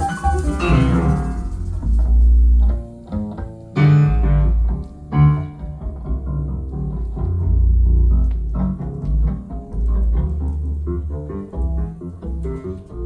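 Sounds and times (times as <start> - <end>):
struck notes: 0.0 - 6.2
deep bass notes: 0.0 - 13.0.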